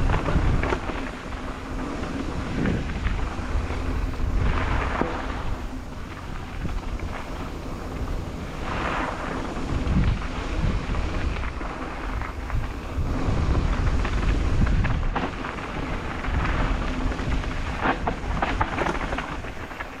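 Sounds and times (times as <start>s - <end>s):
bike clattering over rough trail: 0.0s - 20.0s
wind buffeting microphone: 0.0s - 20.0s.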